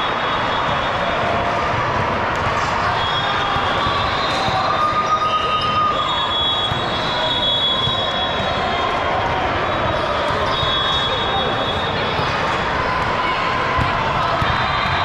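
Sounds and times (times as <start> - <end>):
din of players and spectators: 0.0 - 15.0
sneaker squeaks: 2.6 - 8.6, 9.7 - 12.4.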